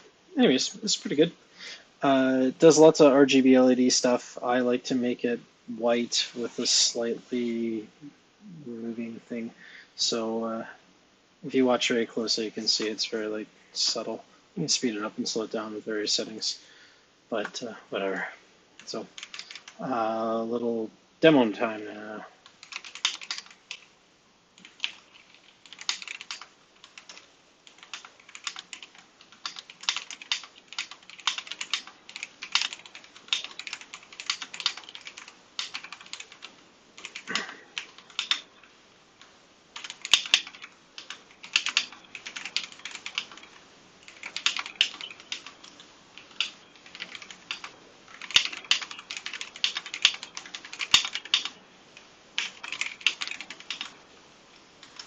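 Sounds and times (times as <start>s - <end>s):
typing on a mechanical keyboard: 18.8s - 19.8s, 22.5s - 23.9s, 24.6s - 38.5s, 39.8s - 51.6s, 52.4s - 53.9s.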